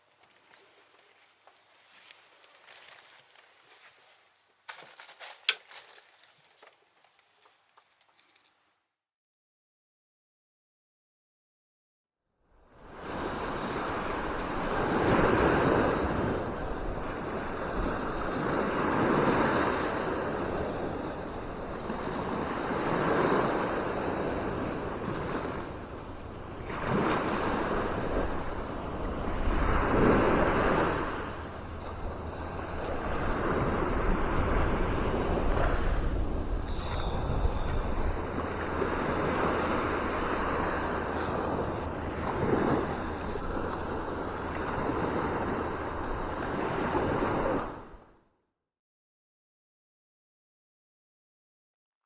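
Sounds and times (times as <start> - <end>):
sea waves washing in: 12.9 - 48.0
wind rumbling on microphone: 13.0 - 47.9.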